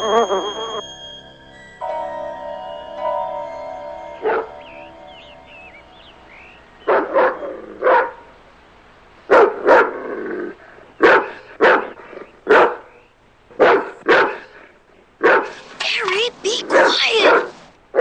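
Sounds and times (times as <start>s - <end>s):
dog barking: 6.8s - 8.3s, 9.3s - 10.0s, 11.0s - 12.9s, 13.6s - 14.6s, 15.2s - 15.6s, 16.6s - 18.0s.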